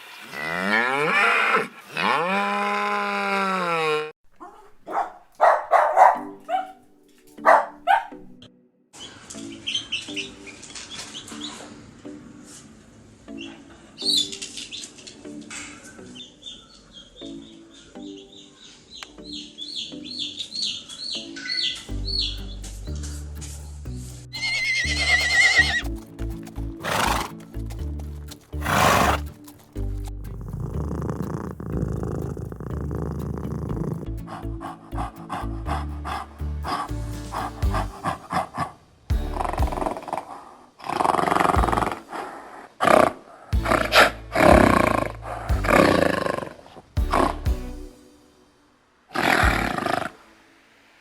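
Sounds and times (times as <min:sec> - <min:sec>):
background music: 0:04.9 - 0:40.8, 0:41.4 - 0:51.0
animal calling loudly: 0:24.4 - 0:25.9, 0:26.8 - 0:27.4, 0:49.1 - 0:50.2
horse neighing: 0:24.4 - 0:26.0, 0:26.8 - 0:27.5, 0:28.6 - 0:29.4, 0:49.2 - 0:50.2.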